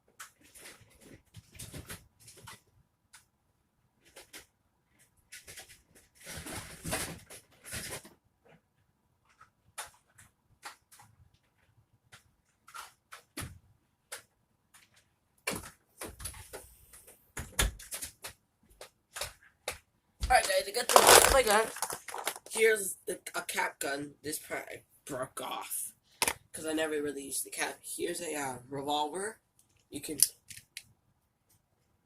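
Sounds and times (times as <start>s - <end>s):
objects clicking and knocking: 17.4s - 22.6s
rustling: 20.3s - 22.6s.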